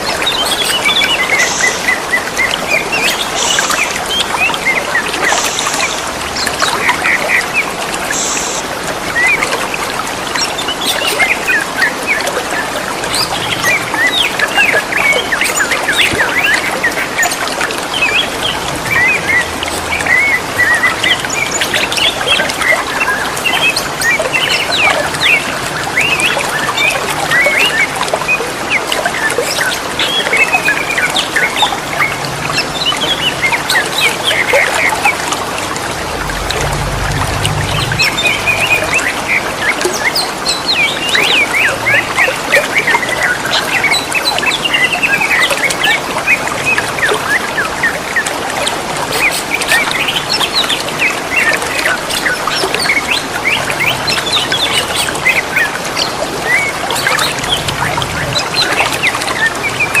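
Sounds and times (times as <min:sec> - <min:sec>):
birds chirping and whistling: 0:00.0 - 0:08.6, 0:18.0 - 0:27.9, 0:36.0 - 0:46.0
trickle of running water: 0:00.0 - 1:00.0.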